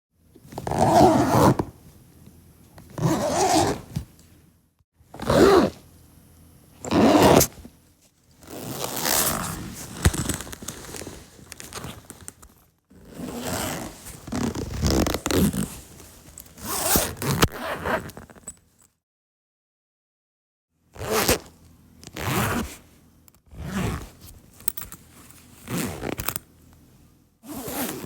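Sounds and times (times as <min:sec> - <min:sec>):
zipper being pulled: 0:00.5 - 0:01.8, 0:02.8 - 0:04.1, 0:05.2 - 0:05.8, 0:06.8 - 0:07.7, 0:08.4 - 0:12.2, 0:13.0 - 0:18.5, 0:21.0 - 0:21.5, 0:22.1 - 0:22.8, 0:23.5 - 0:24.9, 0:25.6 - 0:26.4, 0:27.4 - 0:28.0.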